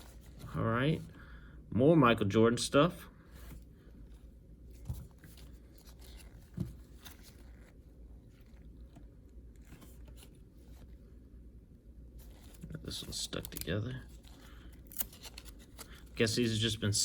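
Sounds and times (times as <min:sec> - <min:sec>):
trading cards and wrappers crinkling: 0:04.0 - 0:11.0, 0:12.2 - 0:17.0.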